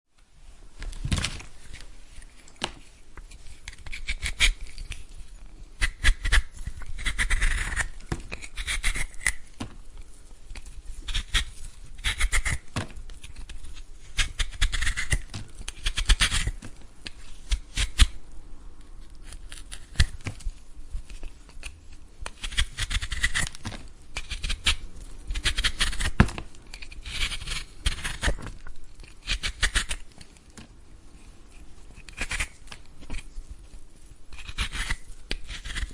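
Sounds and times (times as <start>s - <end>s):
blade scraping vegetable skin: 3.6s - 5.1s, 5.8s - 9.6s, 11.0s - 16.6s, 19.2s - 20.5s, 21.1s - 30.3s, 31.5s - 33.3s, 34.3s - 35.9s.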